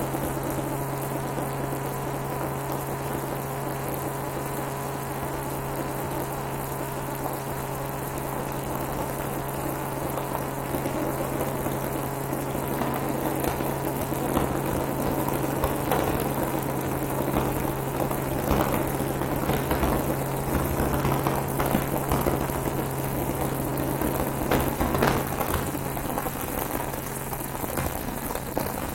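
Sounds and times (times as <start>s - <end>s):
small crackles: 0.1s - 28.9s.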